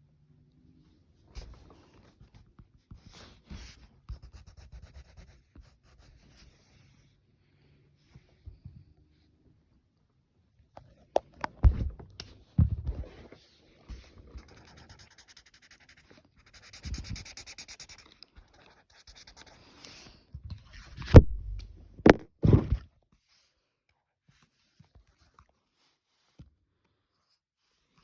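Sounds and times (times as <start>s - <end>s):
scratchy coloring strokes: 3.6s - 6.6s, 13.9s - 20.2s.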